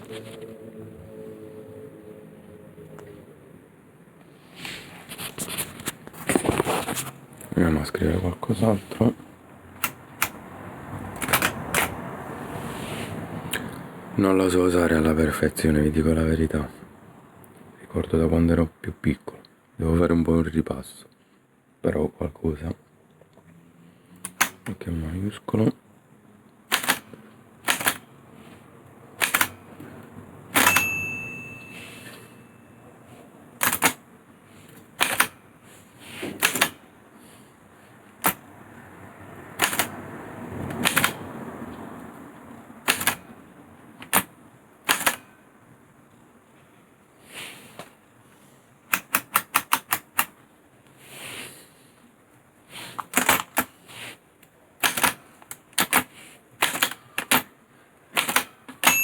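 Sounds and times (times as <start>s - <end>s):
typewriter keys striking: 11.2s - 12.0s, 26.7s - 28.1s, 29.2s - 29.6s, 30.5s - 30.9s, 33.6s - 34.0s, 35.0s - 35.4s, 36.4s - 36.8s, 39.6s - 40.0s, 40.7s - 41.2s, 42.8s - 43.3s, 44.0s - 45.3s, 48.9s - 50.3s, 53.0s - 53.7s, 54.8s - 57.5s, 58.1s - 59.0s
short ringing tone: 30.6s - 32.9s.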